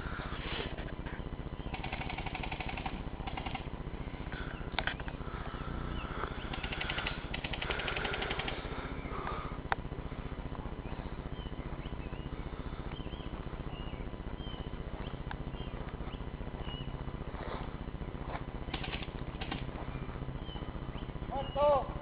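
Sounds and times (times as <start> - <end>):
steady low rumble: 0.0 - 22.0
airsoft gun full-auto bursts: 1.6 - 3.8, 6.4 - 8.8, 18.6 - 20.0
bird chirps: 10.8 - 17.1, 18.7 - 21.9.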